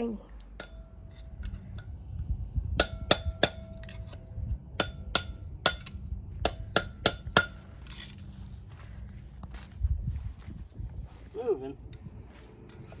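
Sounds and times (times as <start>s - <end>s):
hammer blows on metal: 0.6s - 7.8s.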